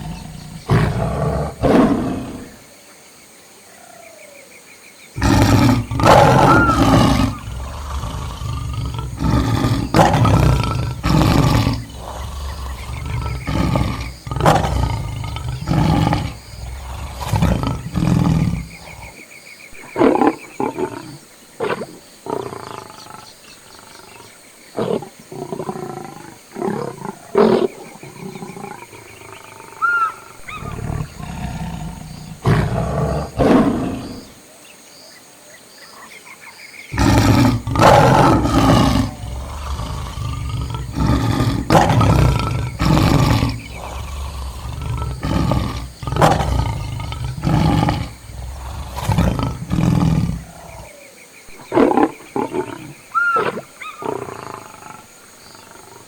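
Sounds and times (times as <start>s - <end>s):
lions growling and roaring: 0.0s - 2.6s, 5.2s - 19.2s, 19.8s - 34.4s, 36.9s - 56.0s.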